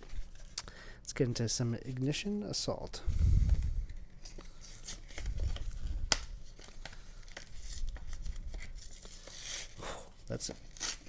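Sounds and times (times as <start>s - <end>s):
foil pack crinkling and tearing: 4.2s - 11.0s.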